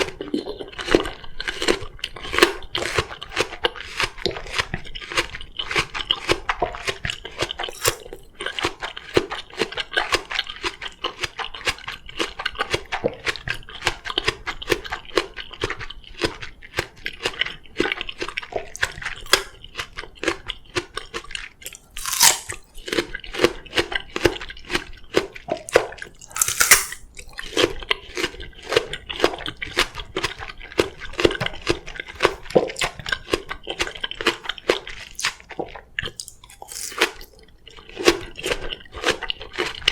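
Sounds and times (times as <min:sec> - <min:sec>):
wet crunching chewing: 0:00.0 - 0:39.9.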